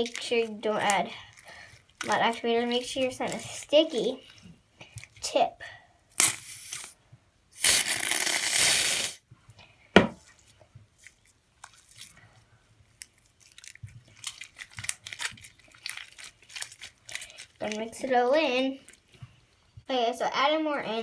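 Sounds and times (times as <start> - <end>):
slime squishing and crackling: 13.2 - 17.6.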